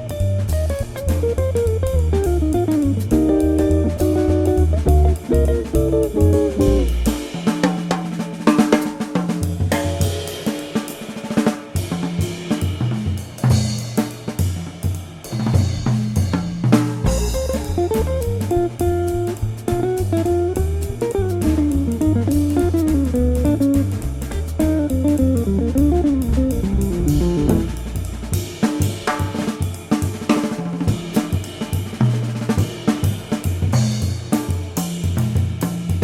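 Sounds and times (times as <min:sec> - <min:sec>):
bass: 0:00.0 - 0:10.5, 0:11.8 - 0:36.0
drum kit with cymbals: 0:00.0 - 0:36.0
guitar melody: 0:01.6 - 0:07.2, 0:17.1 - 0:28.2.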